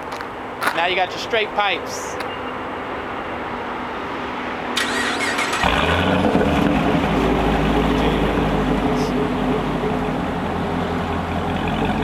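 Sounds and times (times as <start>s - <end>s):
car engine idling loudly: 5.6s - 12.0s.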